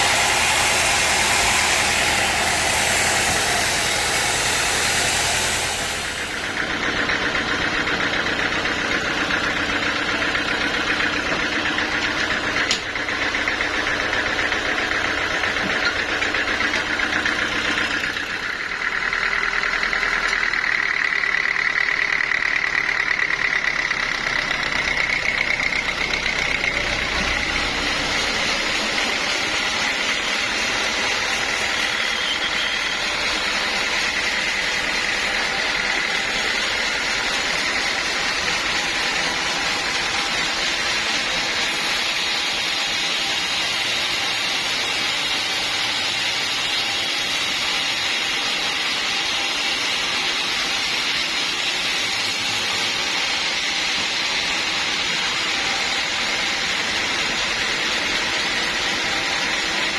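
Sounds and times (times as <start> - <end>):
sawmill machinery running: 0.0 - 59.9.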